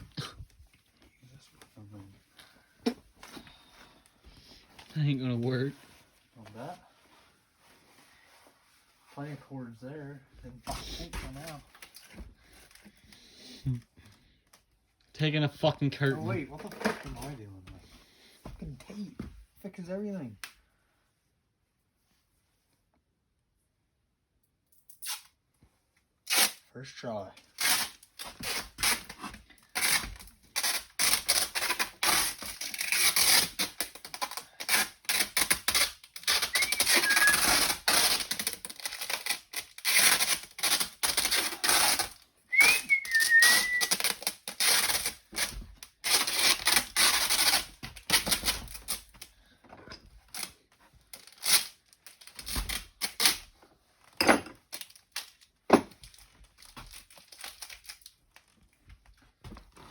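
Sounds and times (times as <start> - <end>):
adhesive tape pulled off roll: 24.9 - 25.4, 26.2 - 26.6, 27.6 - 49.1, 51.1 - 53.4
tape squeaks: 24.9 - 25.4, 26.3 - 26.6, 27.6 - 49.2, 51.2 - 53.4.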